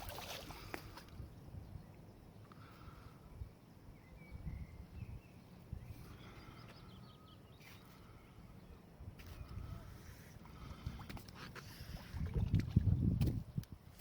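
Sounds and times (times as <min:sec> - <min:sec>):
small birds chirping: 0:01.6 - 0:10.7.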